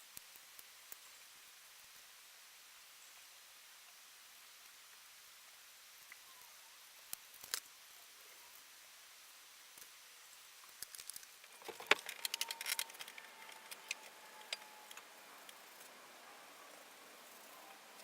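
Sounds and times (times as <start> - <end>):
faint steady tone: 0.0 - 18.0
small hard objects clicking: 7.0 - 7.7, 10.6 - 15.9.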